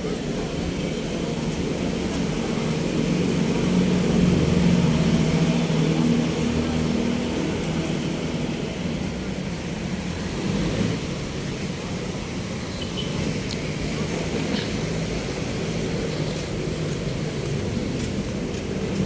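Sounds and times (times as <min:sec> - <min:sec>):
low engine rumble: 0:00.0 - 0:19.0.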